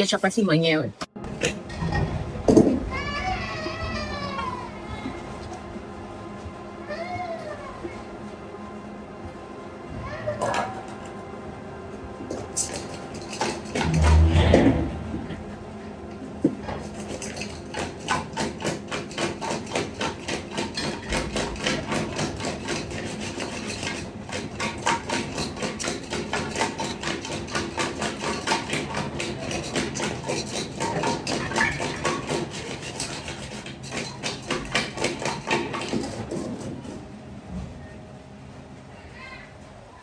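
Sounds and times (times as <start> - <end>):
rapid regular knocking: 16.9 - 37.0.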